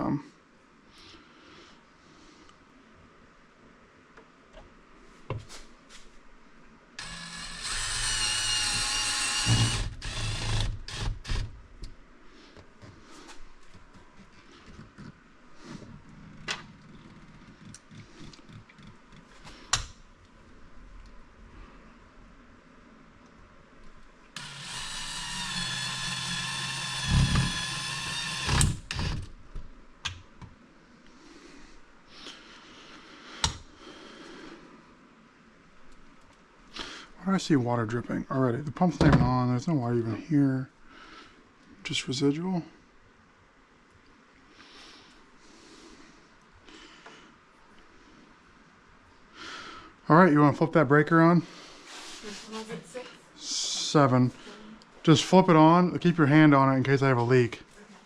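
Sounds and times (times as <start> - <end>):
cordless drill whining: 7.0 - 11.6, 24.4 - 29.3.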